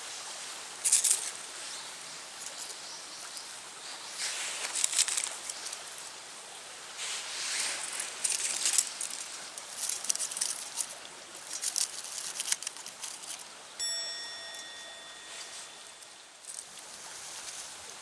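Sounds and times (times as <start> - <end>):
crackling and rustling: 0.8 - 6.2, 7.0 - 13.8, 14.5 - 18.0
bright ringing ding: 13.8 - 16.4.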